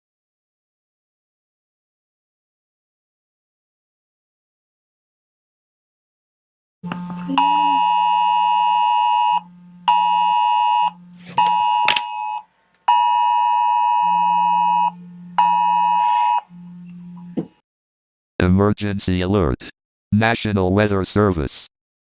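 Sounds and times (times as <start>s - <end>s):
low buzz: 6.8s - 17.5s
two-tone alert beeps from phone: 7.3s - 17.0s.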